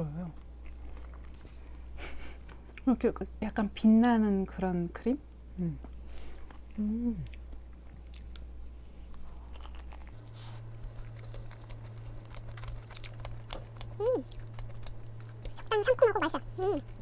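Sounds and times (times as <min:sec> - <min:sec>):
chewing crunchy tart: 0:09.1 - 0:17.0.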